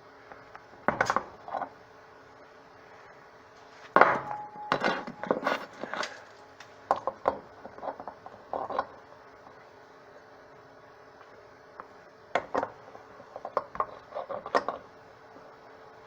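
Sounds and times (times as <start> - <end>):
metal tools knocking and clattering: 4.0 - 5.7
ringing tone: 4.2 - 5.4.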